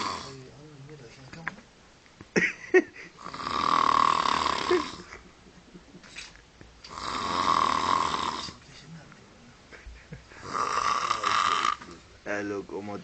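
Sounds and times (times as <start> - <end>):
person snoring loudly: 0.0 - 0.4, 3.2 - 5.1, 6.9 - 8.6, 10.4 - 12.0.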